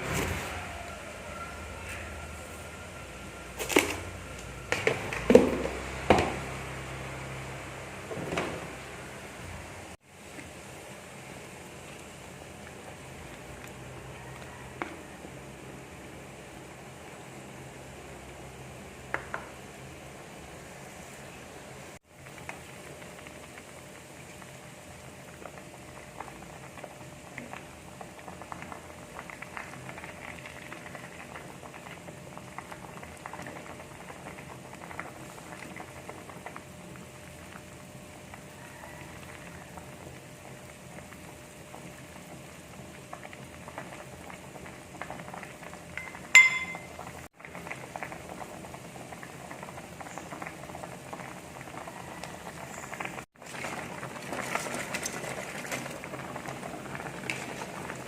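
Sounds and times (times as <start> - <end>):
broth bubbling at a boil: 0.0 - 58.0
sharp ringing clink: 46.0 - 46.9.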